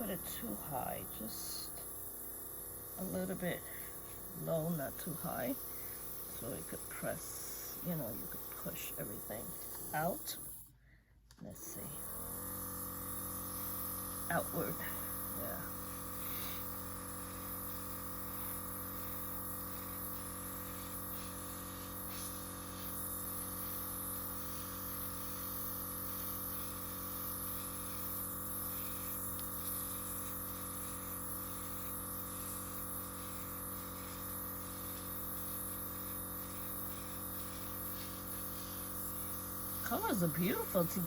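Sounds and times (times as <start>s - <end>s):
air compressor motor hum: 0.0s - 10.8s, 11.5s - 41.0s
air hiss: 13.1s - 41.0s.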